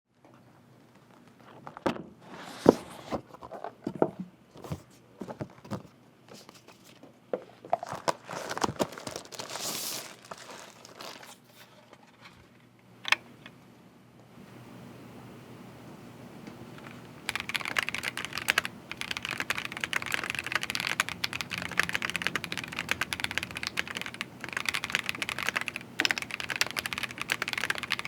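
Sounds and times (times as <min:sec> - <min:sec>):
crinkling rustling: 0:07.6 - 0:12.5.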